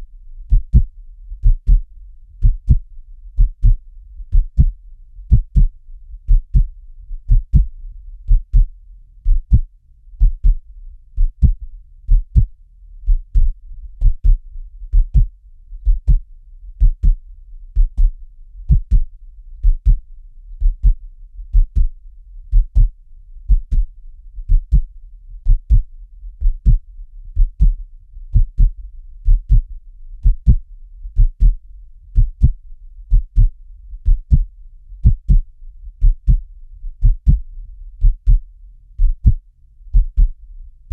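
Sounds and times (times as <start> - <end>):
heartbeat thumps: 0.0 - 26.8, 27.4 - 40.9
low steady rumble: 0.0 - 40.9.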